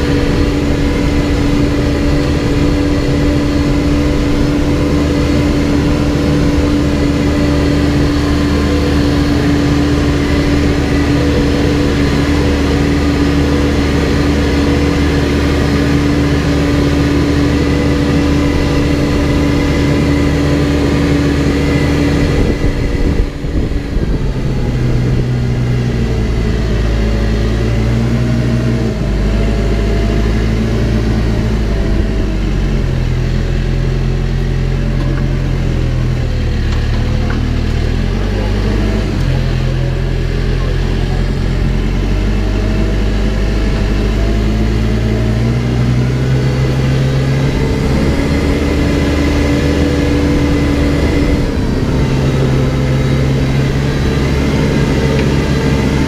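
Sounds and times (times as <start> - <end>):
backhoe engine running: 0.0 - 56.0.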